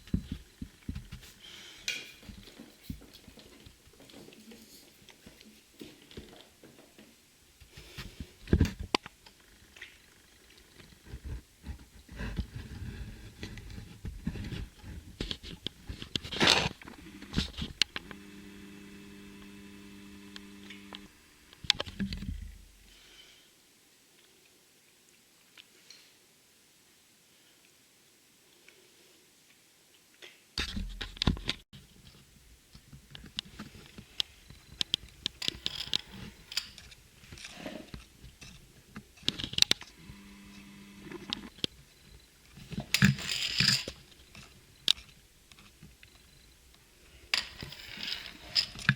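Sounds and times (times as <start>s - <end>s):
steady low hum: 16.9s - 22.9s, 39.8s - 43.0s.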